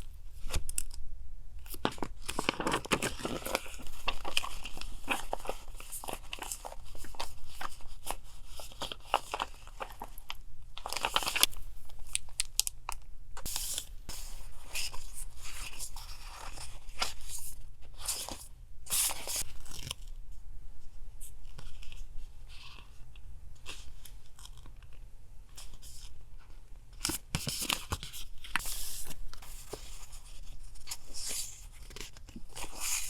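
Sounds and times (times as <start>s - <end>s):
paper rustling and tearing: 1.7s - 12.2s, 27.0s - 33.0s.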